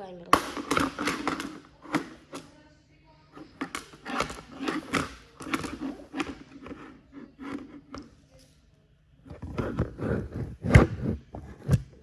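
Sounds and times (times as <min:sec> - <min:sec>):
robot vacuum being handled: 0:00.4 - 0:02.5, 0:03.4 - 0:08.1.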